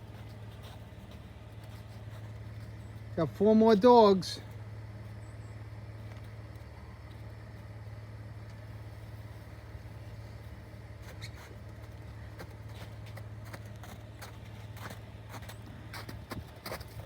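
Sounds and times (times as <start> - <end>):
vehicle engine idling: 0.0 - 17.0.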